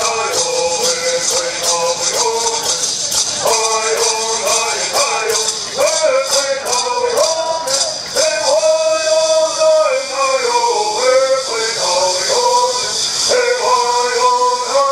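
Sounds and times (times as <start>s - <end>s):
men singing in unison: 0.0s - 14.9s.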